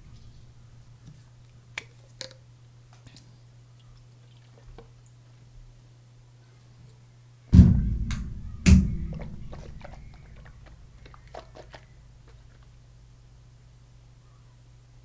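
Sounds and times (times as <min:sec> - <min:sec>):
heavy low thuds: 0:07.6 - 0:11.6.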